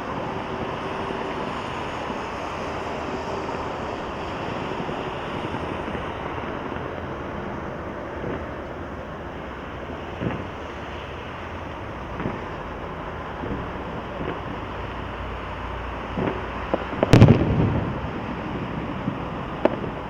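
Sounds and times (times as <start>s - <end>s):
fireworks rushing hiss: 0.0s - 20.0s
firework shells booming: 16.1s - 20.0s.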